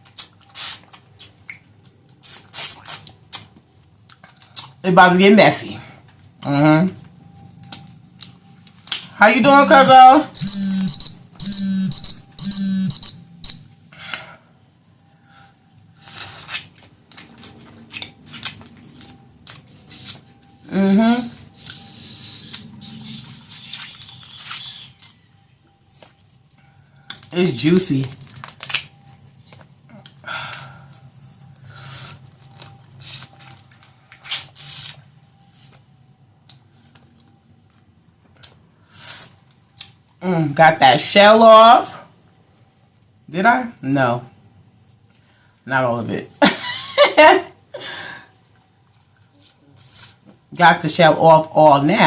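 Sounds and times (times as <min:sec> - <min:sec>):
eating and smacking: 0:00.0 - 0:04.8, 0:16.1 - 0:20.4, 0:21.6 - 0:25.2
electronic beeping tone: 0:10.4 - 0:13.7.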